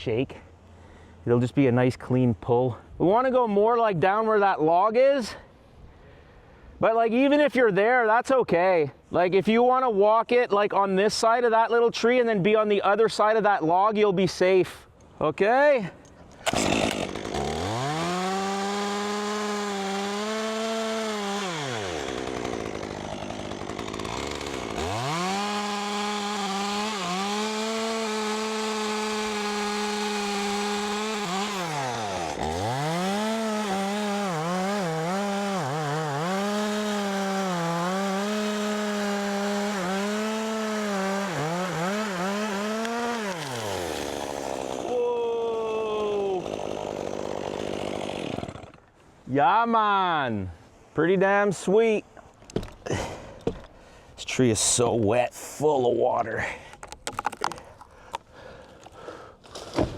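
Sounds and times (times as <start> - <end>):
chainsaw cutting wood: 16.4 - 45.0, 45.9 - 49.0, 56.8 - 59.9.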